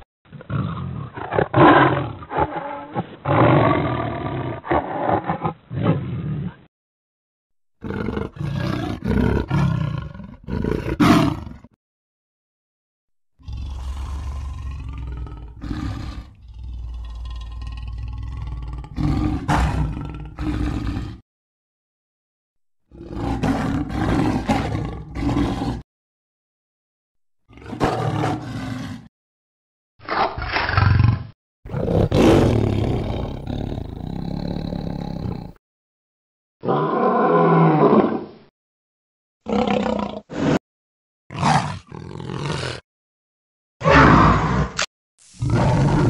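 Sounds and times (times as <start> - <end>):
big cat roars and growls: 0.0 - 6.7, 7.8 - 11.8, 13.4 - 21.2, 22.9 - 25.9, 27.4 - 29.1, 30.0 - 35.6, 36.6 - 38.4, 39.4 - 40.6, 41.3 - 42.9, 43.8 - 46.0.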